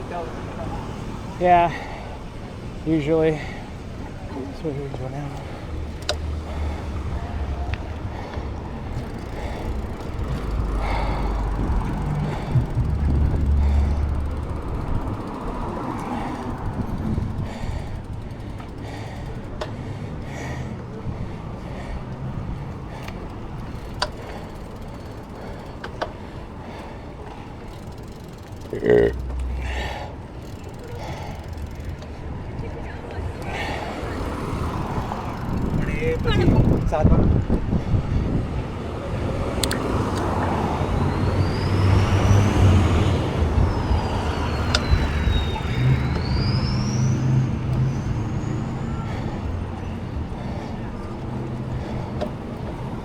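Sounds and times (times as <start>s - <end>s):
bike rolling on dirt: 2.9s - 53.0s
bike clicks and knocks: 5.3s - 37.0s, 39.2s - 48.0s, 49.5s - 53.0s
sharp clicks: 39.5s - 40.4s.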